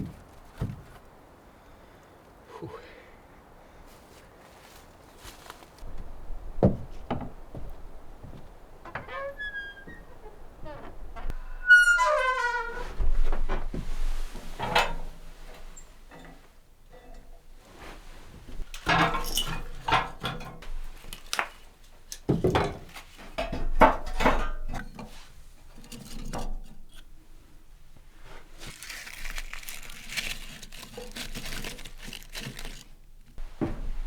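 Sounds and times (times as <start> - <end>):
crinkly rustling: 3.9 - 11.4, 17.6 - 22.2, 28.0 - 34.0
knocks and clatter of objects: 18.5 - 21.6, 22.2 - 25.1.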